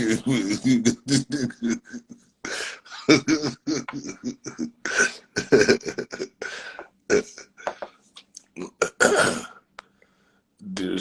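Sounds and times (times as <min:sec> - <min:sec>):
man clearing throat and coughing: 0:00.0 - 0:07.4, 0:08.6 - 0:09.6.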